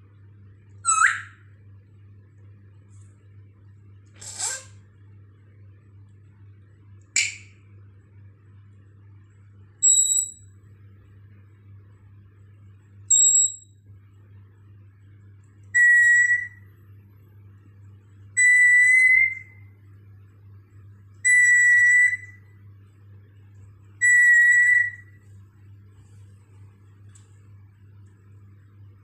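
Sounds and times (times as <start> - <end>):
parrot whistling ringtone imitation: 0.8 - 1.4, 9.8 - 10.4, 15.8 - 16.6, 18.4 - 19.6, 21.2 - 22.4, 24.0 - 25.1.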